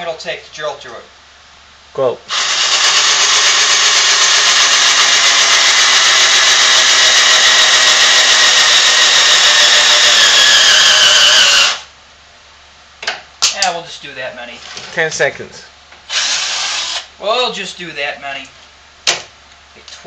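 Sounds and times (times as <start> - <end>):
cordless drill boring through tile: 2.3 - 11.9, 16.1 - 17.1.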